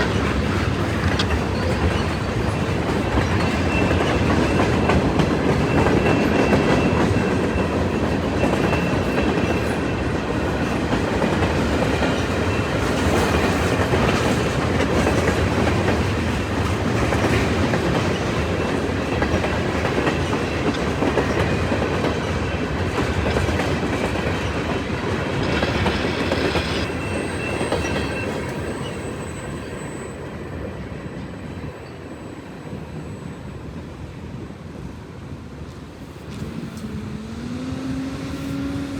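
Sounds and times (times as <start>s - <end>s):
train wheels clicking over rail joints: 0.0s - 29.4s.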